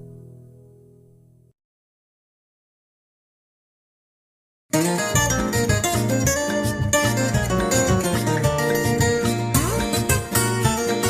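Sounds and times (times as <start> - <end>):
plucked acoustic strings: 4.8 - 11.0
bass line: 5.0 - 11.0.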